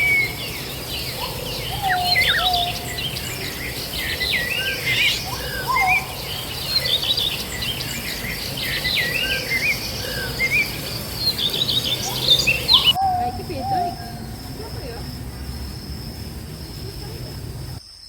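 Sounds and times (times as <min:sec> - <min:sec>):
birds chirping: 0:00.0 - 0:17.8
low whistled bird notes: 0:00.0 - 0:17.8
low background rumble: 0:09.8 - 0:17.8.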